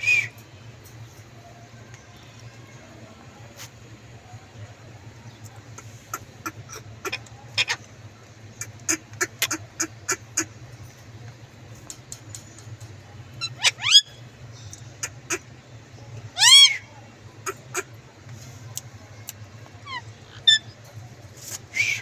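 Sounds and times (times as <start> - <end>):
parakeet clicks and chirps: 11.2 - 13.6
parakeet loud rising calls: 13.4 - 14.2, 16.4 - 16.9.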